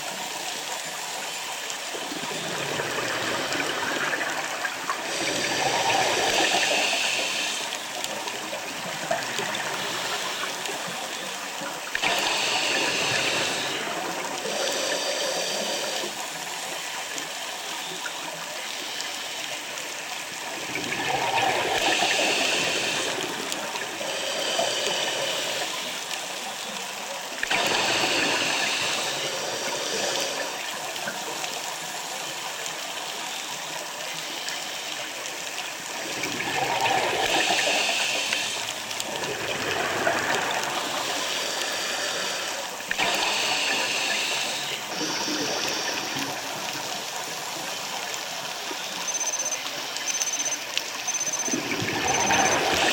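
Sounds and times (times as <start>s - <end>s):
steady underwater rush: 0.0s - 52.9s
diver breathing through regulator: 12.0s - 16.2s, 21.5s - 26.0s, 27.4s - 30.6s, 36.6s - 46.7s.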